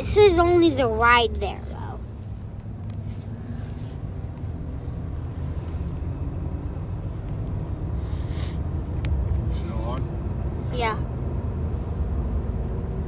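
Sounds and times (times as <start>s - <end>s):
car cabin road noise: 0.0s - 13.0s
brief hiss: 8.0s - 8.6s.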